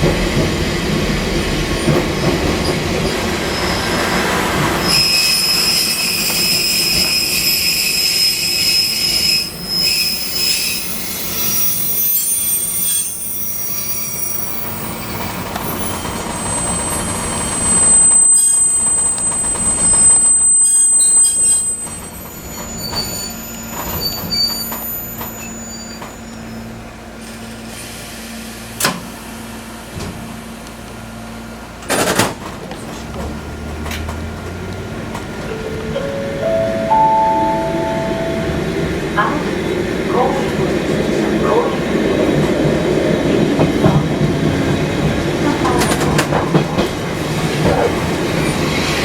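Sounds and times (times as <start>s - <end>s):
train rail and running noise: 0.0s - 49.0s
high-pitched wheel squeal: 4.8s - 26.7s.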